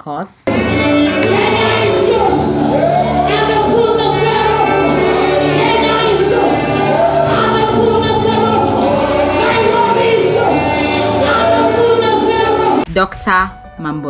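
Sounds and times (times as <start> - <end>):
gospel singing voices: 0.5 - 12.9
sustained bass notes: 0.5 - 13.9.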